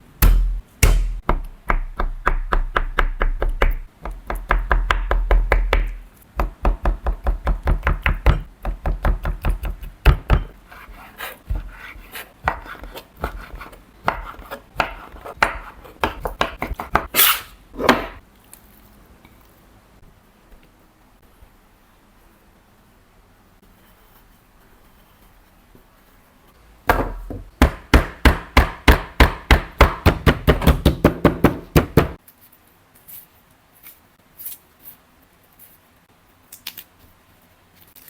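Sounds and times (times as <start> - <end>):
knife chopping on cutting board: 0.2 - 18.2, 26.9 - 32.2.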